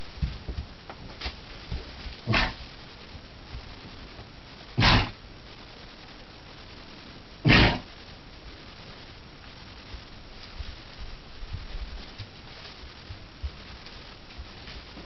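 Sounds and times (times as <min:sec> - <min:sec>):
donkey sneezing: 0:02.3 - 0:02.6, 0:04.8 - 0:05.2, 0:07.4 - 0:07.9.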